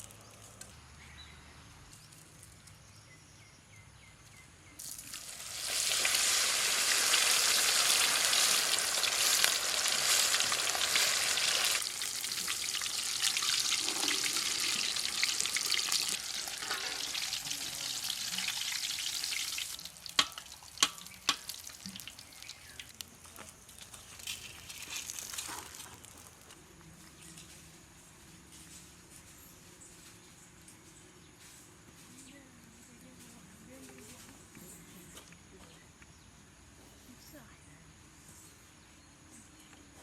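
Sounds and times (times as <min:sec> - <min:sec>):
food sizzling in hot oil: 0:04.8 - 0:23.0.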